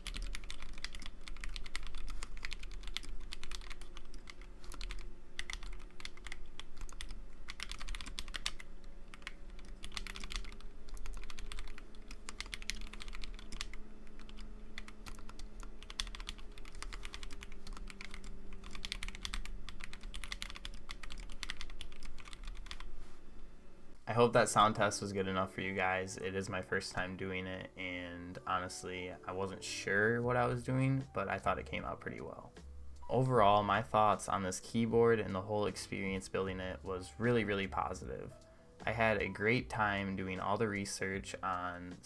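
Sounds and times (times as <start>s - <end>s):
mechanical keyboard typing: 0.0s - 22.9s.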